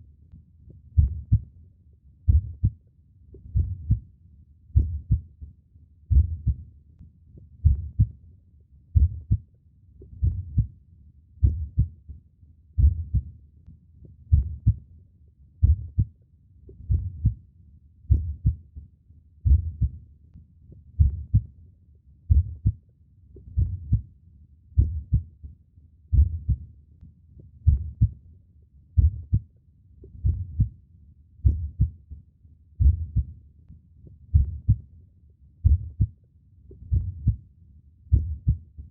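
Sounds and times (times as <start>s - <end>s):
slow human heartbeat: 0.7s - 1.5s, 2.3s - 4.1s, 4.7s - 6.7s, 7.4s - 8.2s, 8.9s - 10.8s, 11.4s - 13.4s, 14.0s - 14.9s, 15.6s - 20.1s, 20.7s - 21.6s, 22.3s - 22.8s, 23.4s - 24.1s, 24.7s - 26.7s, 27.4s - 28.2s, 29.0s - 30.8s, 31.4s - 32.2s, 32.8s - 33.4s, 34.0s - 34.9s, 35.6s - 37.5s, 38.1s - 38.9s.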